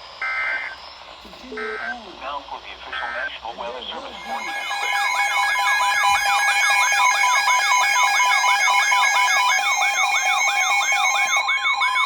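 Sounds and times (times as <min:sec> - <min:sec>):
steady beeping tones: 0:00.1 - 0:12.0
electronic siren rising sweep: 0:00.2 - 0:02.0, 0:04.2 - 0:12.0.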